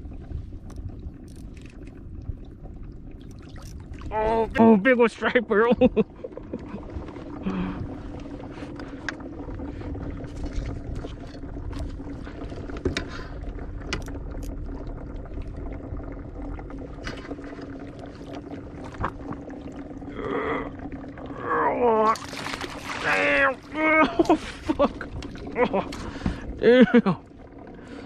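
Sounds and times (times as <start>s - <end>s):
steady low hum: 0.0s - 28.0s
water sloshing and splashing: 0.0s - 28.0s
knocks and clicks against kayak: 12.7s - 13.2s, 13.8s - 14.5s.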